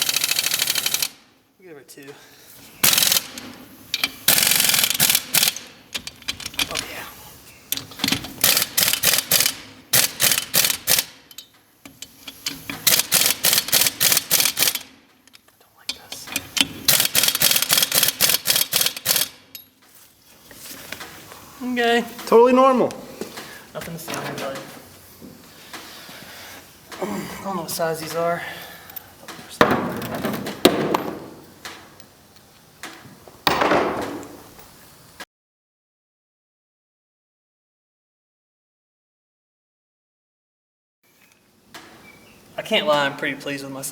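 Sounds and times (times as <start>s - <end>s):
impact wrench rattling: 0.0s - 1.2s, 2.8s - 6.9s, 7.7s - 15.0s, 16.1s - 19.8s
tools and parts knocking: 2.8s - 6.9s, 7.7s - 14.8s, 29.3s - 31.8s, 32.9s - 34.4s.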